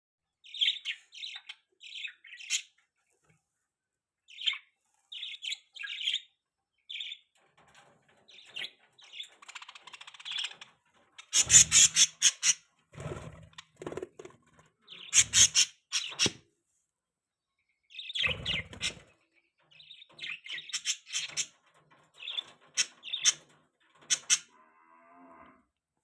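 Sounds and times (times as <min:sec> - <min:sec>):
budgerigars chirping: 0:11.2 - 0:12.6, 0:14.9 - 0:16.4, 0:18.0 - 0:19.1.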